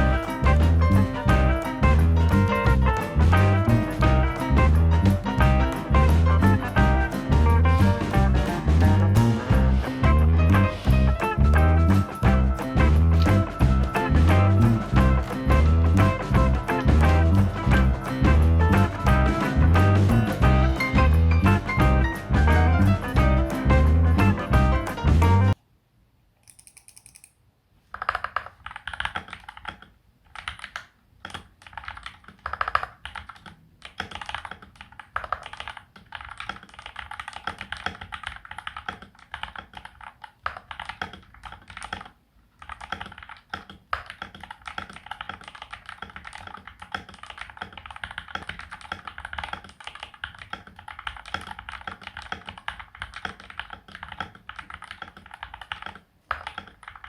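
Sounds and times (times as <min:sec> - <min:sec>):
mechanical keyboard typing: 0:26.4 - 0:57.0.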